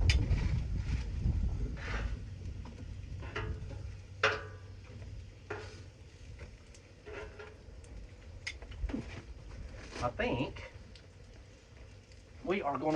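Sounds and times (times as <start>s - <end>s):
low steady hum: 0.0s - 12.9s
metal spatula scraping griddle: 1.7s - 2.3s, 5.5s - 5.9s, 7.0s - 7.6s.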